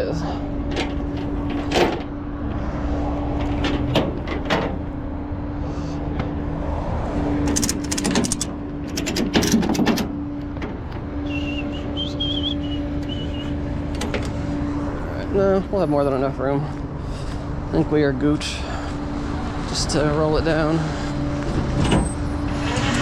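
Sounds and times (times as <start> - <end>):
metallic rattling clanks: 0.6 - 2.2, 3.4 - 4.9, 7.4 - 10.9
high wavering squeal: 11.1 - 13.7.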